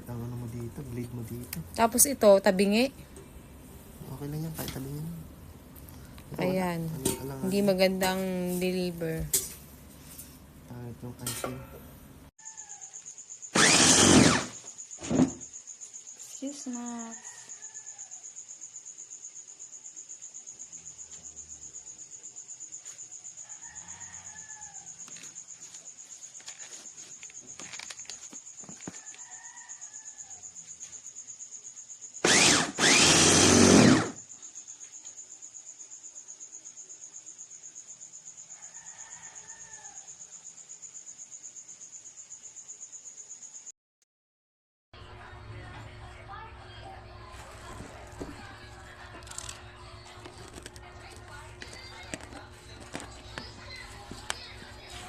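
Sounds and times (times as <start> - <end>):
rooster crowing faintly: 12.4 - 13.8, 16.9 - 18.4, 23.2 - 25.3, 28.8 - 30.8, 38.5 - 40.3
high-pitched insect trill: 12.4 - 43.7
loud noisy burst: 13.6 - 14.6, 32.2 - 34.2.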